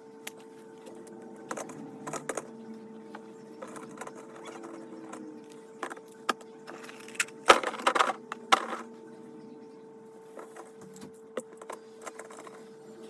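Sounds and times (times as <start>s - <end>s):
fidget toys clattering: 3.6s - 8.9s, 10.4s - 12.6s.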